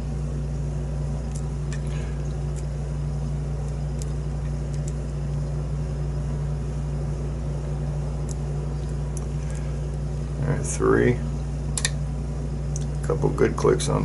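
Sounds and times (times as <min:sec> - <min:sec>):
low machine hum: 0:00.0 - 0:14.0.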